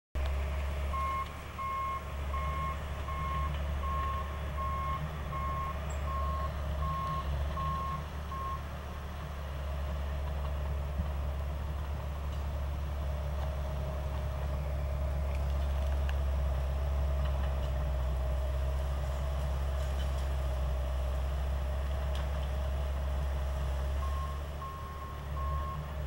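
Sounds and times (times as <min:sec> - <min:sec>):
bulldozer engine running: 0:00.2 - 0:26.0
backup alarm beeping: 0:00.9 - 0:08.6.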